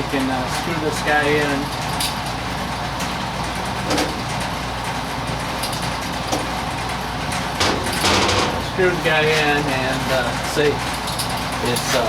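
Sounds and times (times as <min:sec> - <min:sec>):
low mechanical hum: 0:00.0 - 0:12.0.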